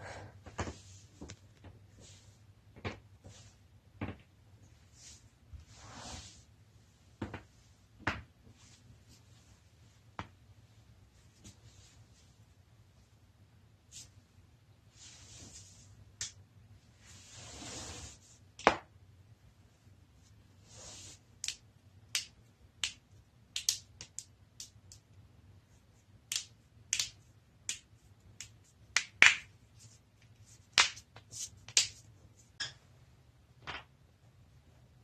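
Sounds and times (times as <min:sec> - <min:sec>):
soft rush of noise: 0:00.0 - 0:18.5.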